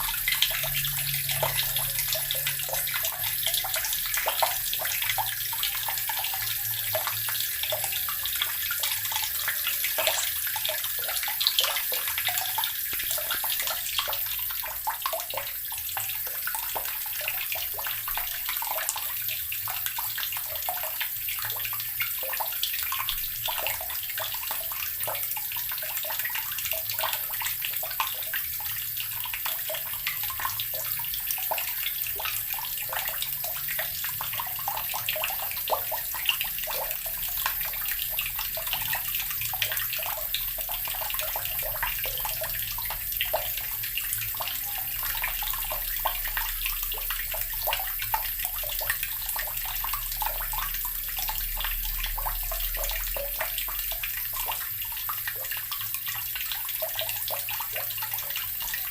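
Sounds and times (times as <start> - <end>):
water pouring from a tap: 0.0 - 58.9.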